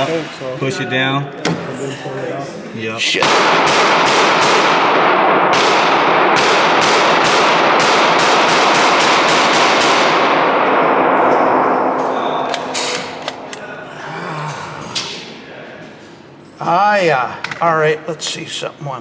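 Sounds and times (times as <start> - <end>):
rapid gunfire echoing indoors: 3.2 - 13.9.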